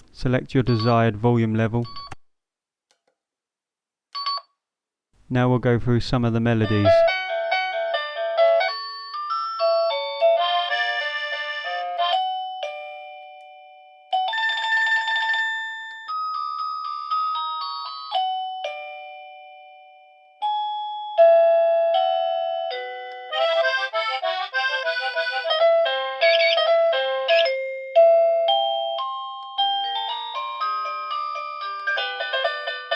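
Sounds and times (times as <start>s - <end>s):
doorbell ding-dong chimes: 6.9s - 23.4s
short beeping tunes: 26.2s - 26.7s.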